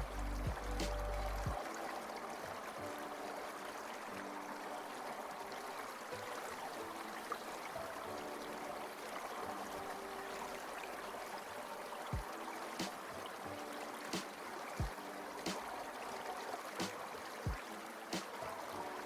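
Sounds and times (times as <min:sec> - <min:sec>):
deep bass note: 0:00.0 - 0:01.6
faint held music tones: 0:00.0 - 0:19.0
small stream running: 0:00.0 - 0:19.0.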